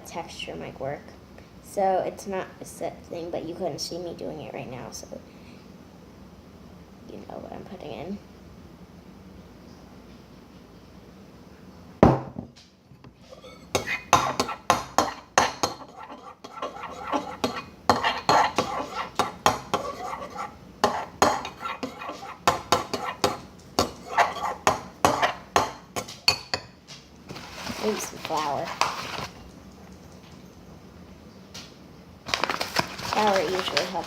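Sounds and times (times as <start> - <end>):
spoon scraping a bowl: 13.2 - 25.5, 27.3 - 29.4.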